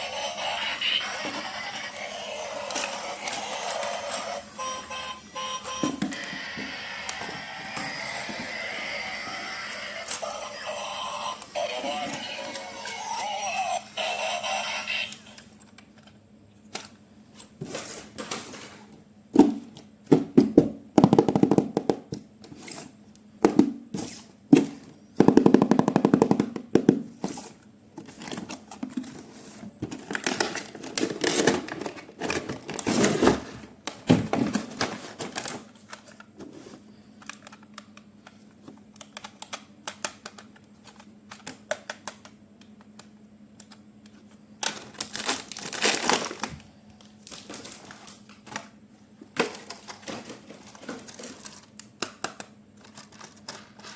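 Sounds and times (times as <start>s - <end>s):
plastic toy parts rattling: 0.8s - 4.5s, 49.4s - 53.9s.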